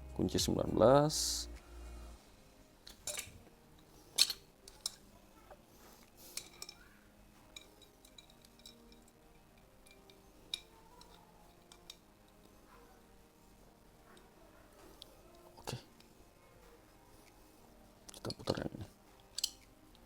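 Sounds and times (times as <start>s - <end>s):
wrench clicking on metal nut: 19.3s - 19.7s.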